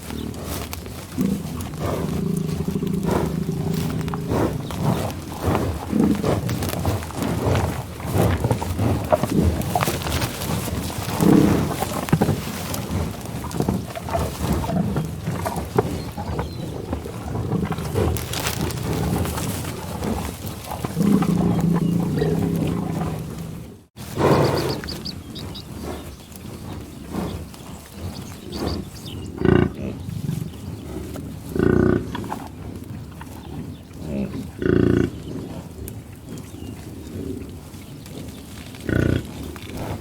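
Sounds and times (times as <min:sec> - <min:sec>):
cattle mooing: 0:01.2 - 0:07.7, 0:16.4 - 0:24.8.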